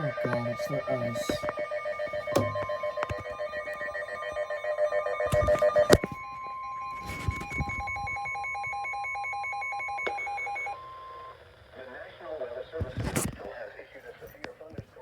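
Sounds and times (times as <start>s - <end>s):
warbling alert tone: 0.0s - 6.0s
pulsing beeps: 0.0s - 11.4s
steady high warning tone: 0.0s - 12.6s
knocks: 2.3s - 3.3s.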